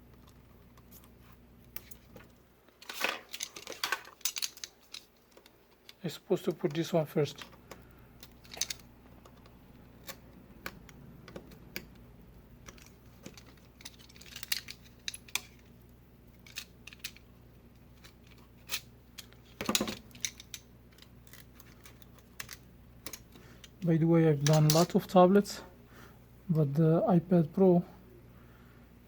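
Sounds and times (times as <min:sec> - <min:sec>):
small tools clicking and tapping: 0:01.7 - 0:06.0, 0:06.6 - 0:15.7, 0:16.4 - 0:17.3, 0:18.0 - 0:23.8, 0:24.4 - 0:25.0.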